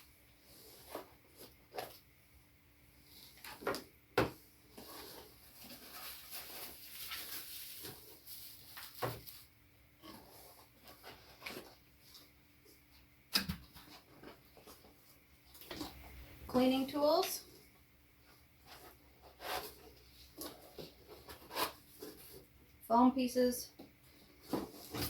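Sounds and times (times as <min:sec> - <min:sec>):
packaging and foam rustling: 0:04.6 - 0:12.4, 0:18.4 - 0:22.6, 0:24.1 - 0:25.0.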